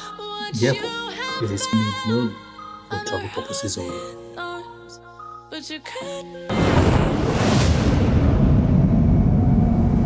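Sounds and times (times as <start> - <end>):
background music: 0.0 - 7.0.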